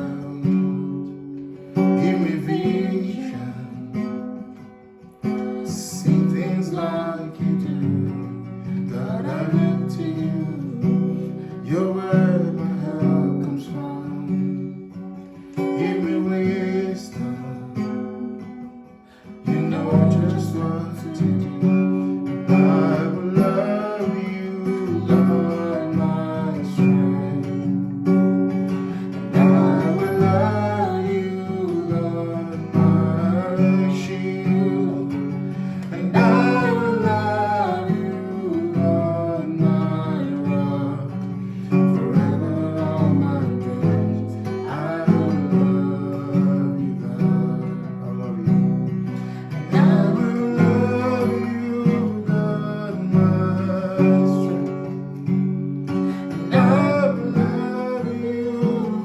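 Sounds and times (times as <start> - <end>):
strummed acoustic guitar: 0.0 - 59.0
person singing: 1.8 - 4.2, 5.6 - 7.9, 15.5 - 27.8, 28.9 - 48.5, 49.2 - 55.0, 56.0 - 59.0.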